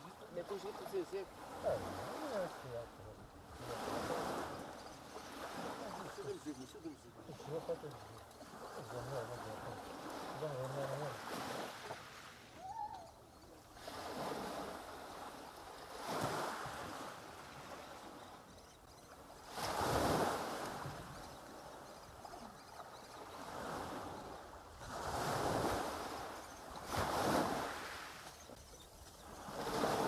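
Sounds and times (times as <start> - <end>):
sea waves breaking on beach: 0.0 - 30.0.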